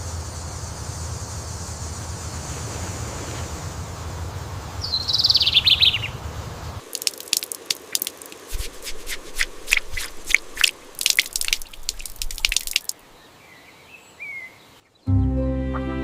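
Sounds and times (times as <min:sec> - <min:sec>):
sharp crunching clicks: 0:06.8 - 0:13.0.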